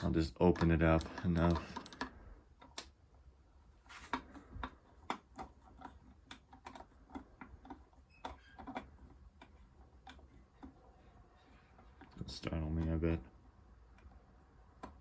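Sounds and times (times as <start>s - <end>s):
faint metal clicks and ticks: 0.0s - 3.0s.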